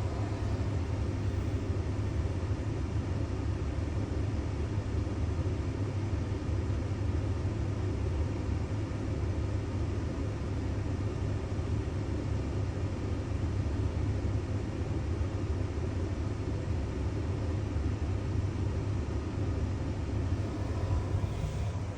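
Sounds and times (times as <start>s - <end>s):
vehicle engine low rumble: 0.0s - 2.4s, 20.3s - 21.9s.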